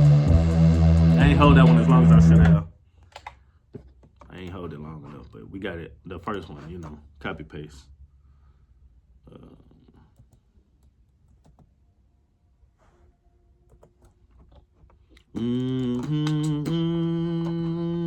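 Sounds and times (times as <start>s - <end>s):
synthesizer held notes: 0.0s - 2.6s
computer keyboard clicks: 3.1s - 3.4s.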